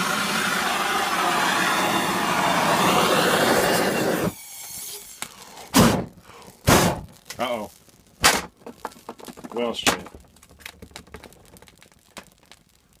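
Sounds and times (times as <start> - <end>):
gas torch flame rushing: 0.0 - 7.1.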